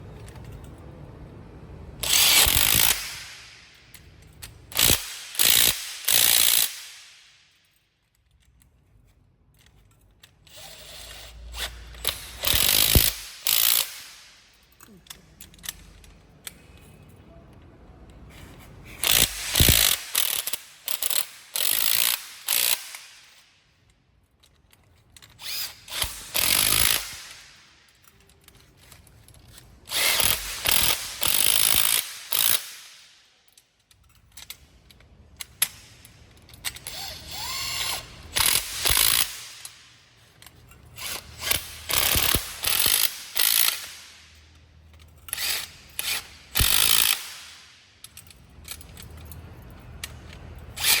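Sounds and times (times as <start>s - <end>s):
impact wrench bursts: 2.0s - 4.0s, 4.6s - 7.5s, 10.4s - 14.6s, 18.4s - 23.4s, 25.3s - 28.2s, 29.8s - 33.2s, 35.4s - 40.0s, 40.6s - 44.6s, 45.2s - 49.0s, 50.0s - 51.0s.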